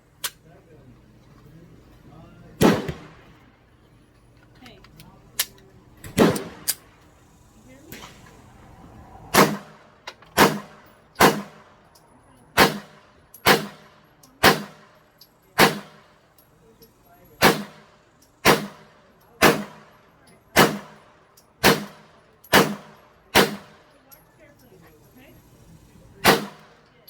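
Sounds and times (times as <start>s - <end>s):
handgun shots echoing: 2.6s - 3.4s, 5.4s - 6.9s, 9.3s - 9.8s, 10.4s - 11.8s, 12.5s - 14.9s, 15.6s - 16.1s, 17.4s - 21.0s, 21.6s - 23.8s, 26.2s - 26.9s.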